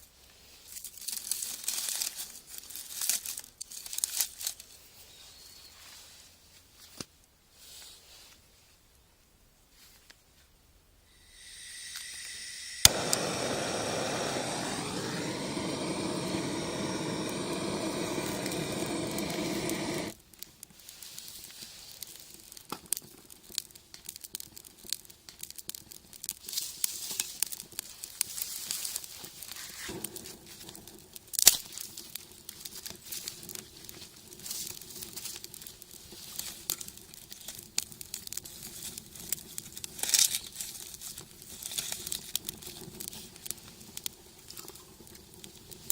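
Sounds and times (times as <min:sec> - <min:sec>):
wood fire crackling: 0:00.3 - 0:06.1, 0:11.2 - 0:45.9
loud steady hiss: 0:11.1 - 0:20.2.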